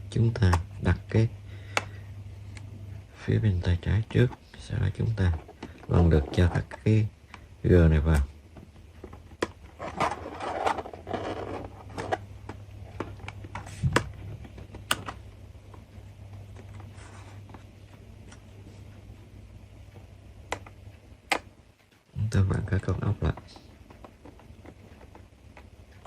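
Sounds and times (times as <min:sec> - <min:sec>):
plastic cover scraping: 0:09.7 - 0:12.2.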